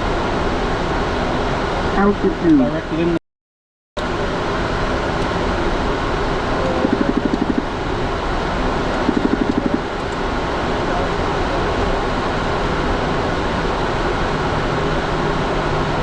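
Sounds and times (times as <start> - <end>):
jet cockpit airflow and engine noise: 0.0 - 3.2, 4.0 - 16.0
rapid buzzing pulse: 6.7 - 7.8, 9.0 - 10.0.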